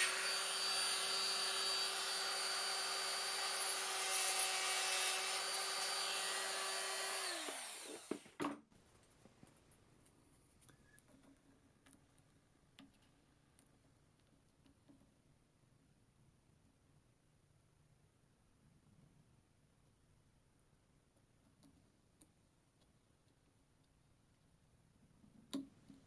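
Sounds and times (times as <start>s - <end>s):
small power tool spinning down: 0.0s - 8.4s.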